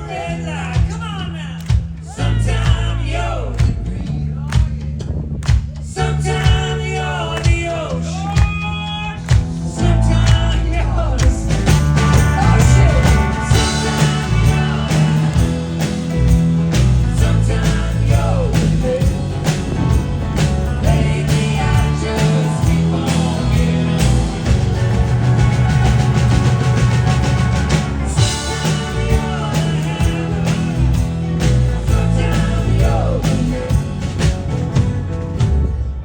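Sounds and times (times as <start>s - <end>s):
rock band playing live: 7.5s - 36.0s
person singing: 9.7s - 15.6s, 20.6s - 26.7s.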